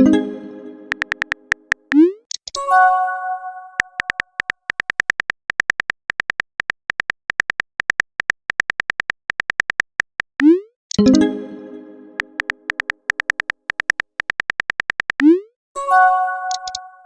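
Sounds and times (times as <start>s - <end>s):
keyboard typing clicks: 0.9s - 2.6s, 3.8s - 11.2s, 12.2s - 15.5s, 16.5s - 16.8s.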